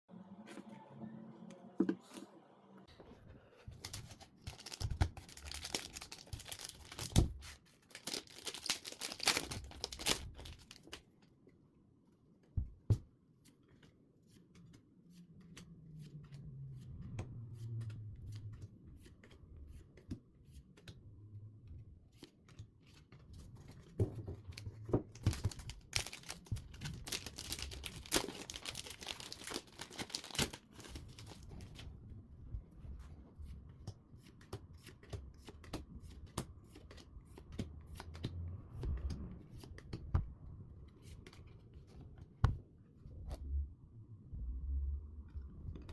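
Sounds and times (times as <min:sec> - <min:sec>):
packaging torn and crinkled: 0:03.8 - 0:10.9, 0:25.1 - 0:31.7.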